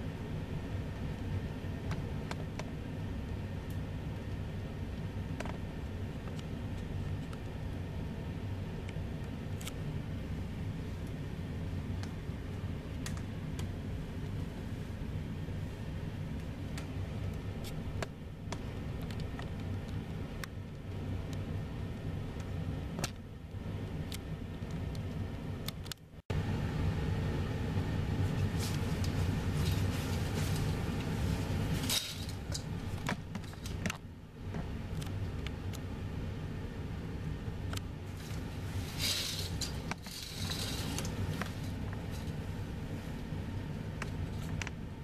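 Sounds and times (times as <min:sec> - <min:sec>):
distant jet airliners rumbling: 0:26.2 - 0:45.0.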